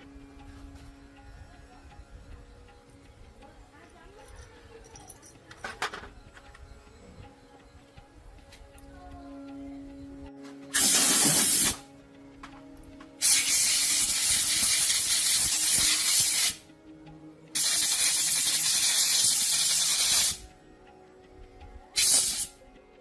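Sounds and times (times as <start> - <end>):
pressurised spray hissing: 10.7 - 11.9, 13.2 - 16.6, 17.6 - 20.4, 22.0 - 22.6.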